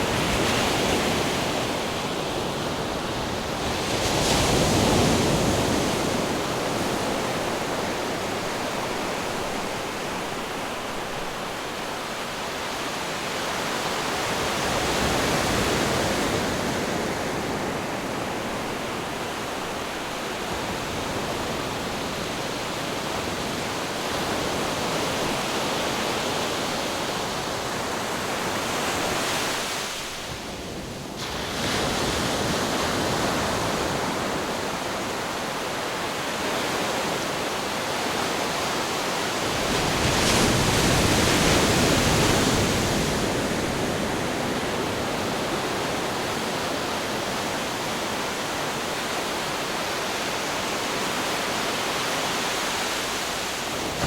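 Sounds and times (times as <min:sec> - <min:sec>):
wind: 0:00.0 - 0:54.0
waves breaking: 0:31.2 - 0:54.0.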